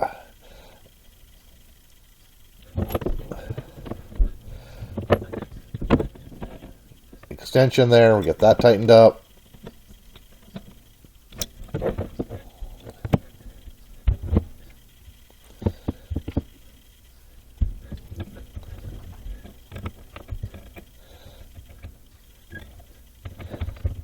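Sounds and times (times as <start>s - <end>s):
heavy thumps: 2.6s - 7.4s, 11.4s - 14.7s, 17.6s - 22.0s.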